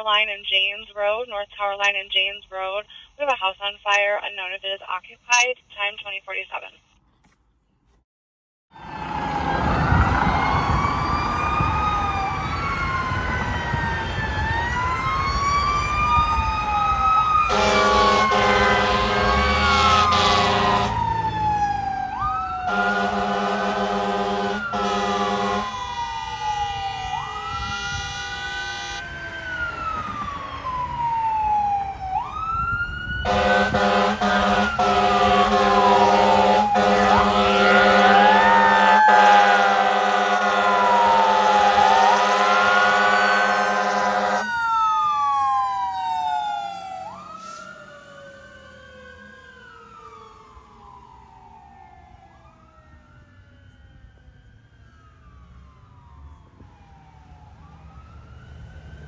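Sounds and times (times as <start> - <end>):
fire engine siren wailing: 8.7 - 59.0
air horn blasts: 17.5 - 21.0, 22.7 - 25.7, 27.7 - 29.0, 33.3 - 44.5.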